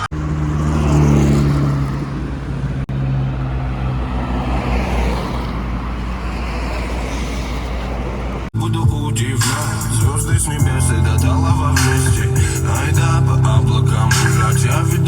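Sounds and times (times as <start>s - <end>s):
car engine running: 8.2s - 15.0s.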